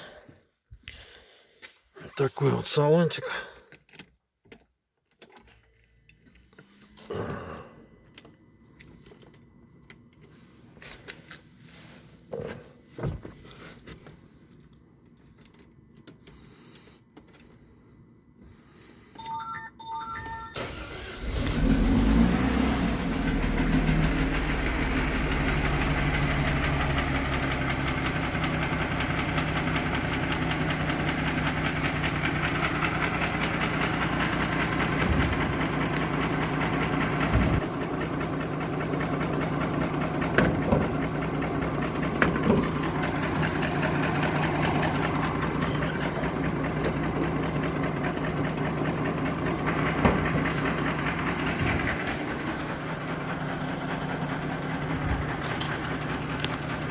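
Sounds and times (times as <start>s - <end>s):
engine idling with a knock: 37.1s - 56.9s.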